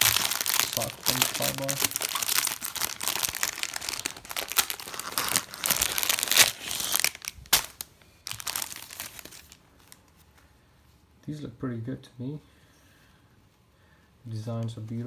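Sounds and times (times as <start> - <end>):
packaging crinkling: 0.0 - 10.1.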